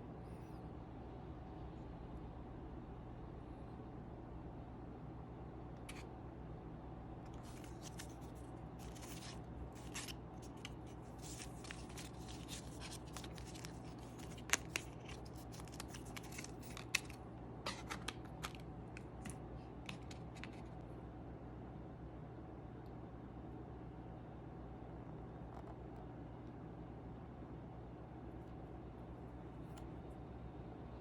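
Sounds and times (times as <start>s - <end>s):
packaging rustling and tearing: 7.4s - 20.7s.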